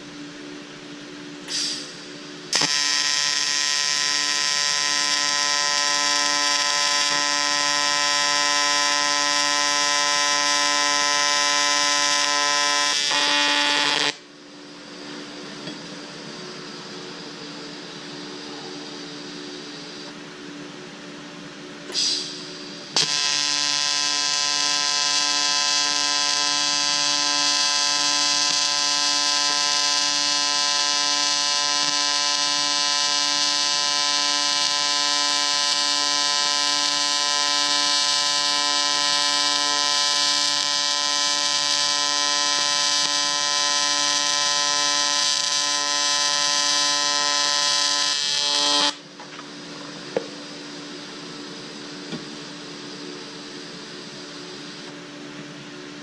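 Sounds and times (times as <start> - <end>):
welding arc buzzing: 1.5 - 14.3, 21.9 - 49.8.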